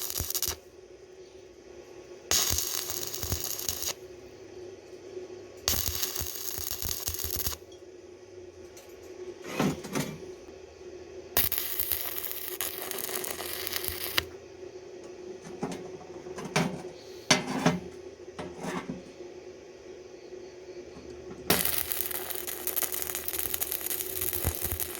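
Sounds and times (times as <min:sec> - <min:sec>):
harsh hissing bursts: 0:00.0 - 0:00.6, 0:11.4 - 0:14.3, 0:21.4 - 0:24.9.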